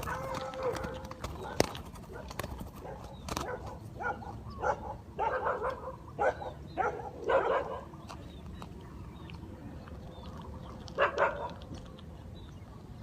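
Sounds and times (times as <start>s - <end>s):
dog barking: 0.0s - 8.0s, 11.0s - 11.6s.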